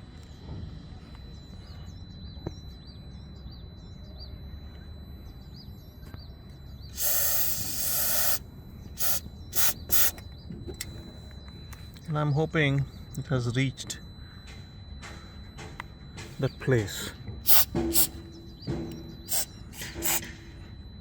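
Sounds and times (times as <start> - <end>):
aerosol spray hissing: 7.0 - 8.4, 9.0 - 10.2, 17.5 - 18.2, 19.3 - 20.3.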